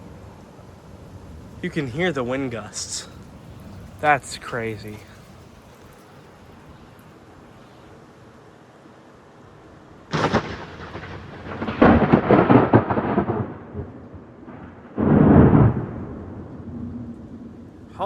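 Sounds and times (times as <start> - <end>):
thunder crack and rumble: 10.1 - 18.0.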